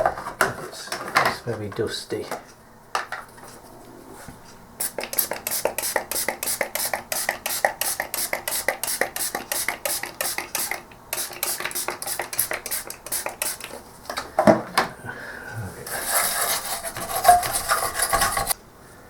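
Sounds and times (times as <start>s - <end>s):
brush scrubbing circuit board: 4.8s - 13.8s, 15.8s - 18.6s.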